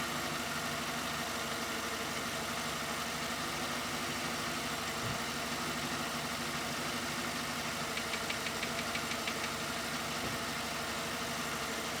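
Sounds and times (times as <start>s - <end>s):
car engine idling with knock: 4.6s - 5.6s, 7.0s - 10.8s
quick light ticks: 7.9s - 9.6s.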